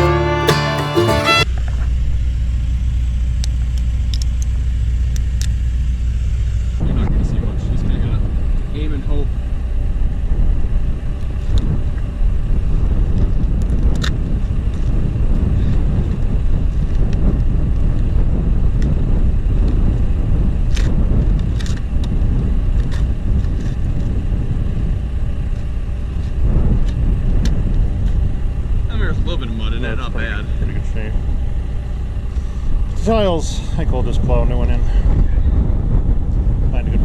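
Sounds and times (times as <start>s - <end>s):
diesel engine rumbling: 0.0s - 1.5s.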